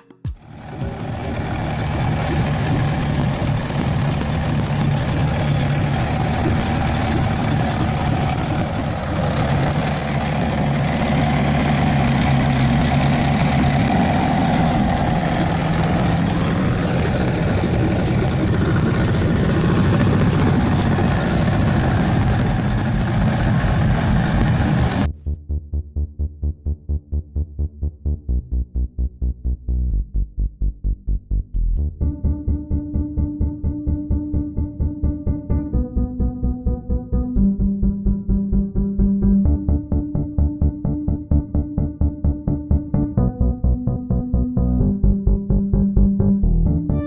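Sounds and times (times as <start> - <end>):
outboard motor running: 0.3 - 25.1
broad rushing noise: 0.4 - 25.1.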